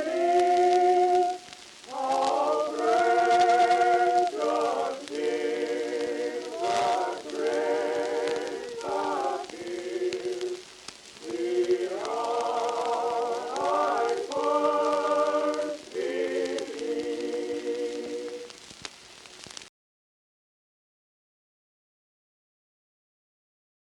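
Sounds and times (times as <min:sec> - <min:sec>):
choir singing held chords: 0:00.0 - 0:18.7.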